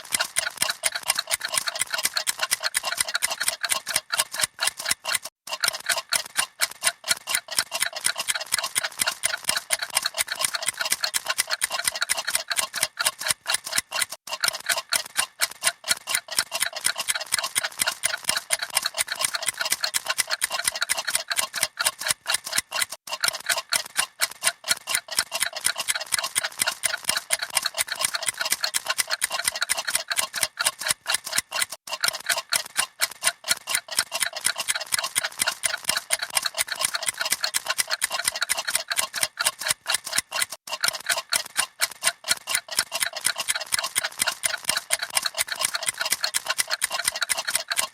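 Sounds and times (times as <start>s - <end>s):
mechanical clocks ticking: 0.0s - 47.9s.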